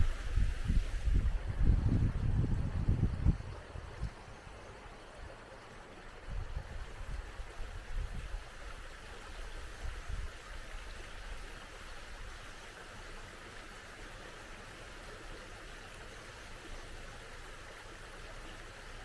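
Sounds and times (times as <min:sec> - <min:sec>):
wind rumble on microphone: 0:00.0 - 0:04.5, 0:06.2 - 0:12.4
mountain stream running: 0:00.0 - 0:19.0.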